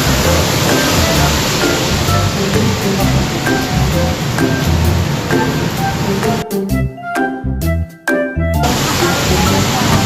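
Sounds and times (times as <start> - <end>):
steady rushing noise: 0.0 - 6.4, 8.6 - 10.0
background music with bass: 0.0 - 10.0.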